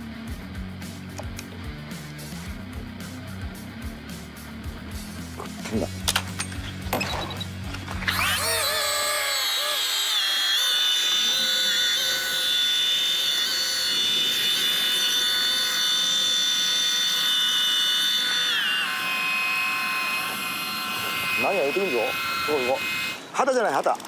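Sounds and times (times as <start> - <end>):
fishing reel whining: 5.8 - 23.2.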